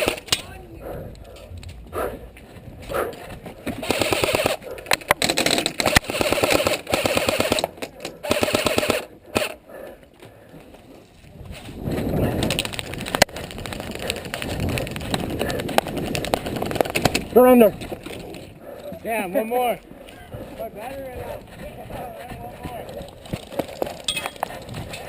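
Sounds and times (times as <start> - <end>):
airsoft gun firing bursts: 0.0 - 0.3, 3.8 - 4.6, 5.2 - 9.6.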